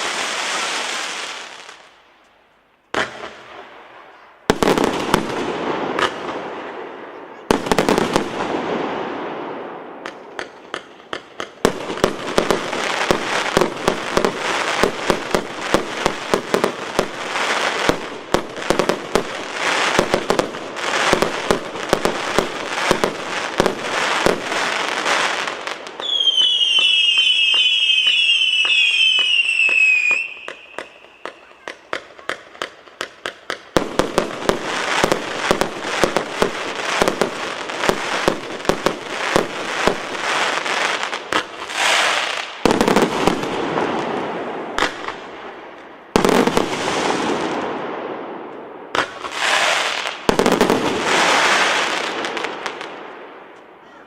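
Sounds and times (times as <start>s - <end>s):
firework bursts with crackling tails: 0.0s - 2.0s, 2.9s - 53.6s
whistling firework shots: 3.0s - 45.4s, 46.1s - 53.2s
rapid volley of firework shots: 4.5s - 45.3s.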